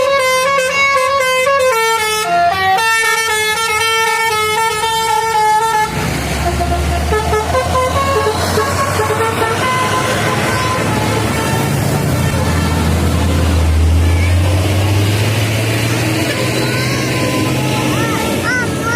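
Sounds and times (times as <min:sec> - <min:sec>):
bus musical air horn: 0:00.0 - 0:18.9
bus engine driving past: 0:03.9 - 0:18.9.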